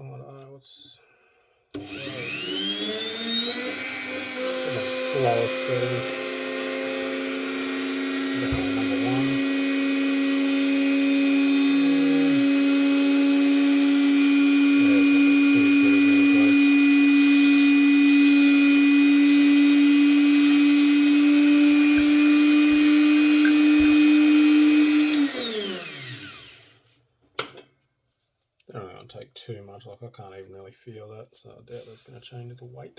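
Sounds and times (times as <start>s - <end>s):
rotary tool running: 1.8s - 26.7s.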